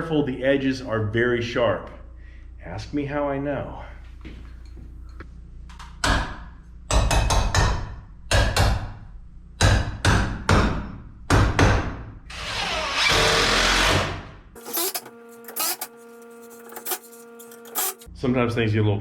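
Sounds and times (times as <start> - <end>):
hammer striking nails: 6.0 - 8.9.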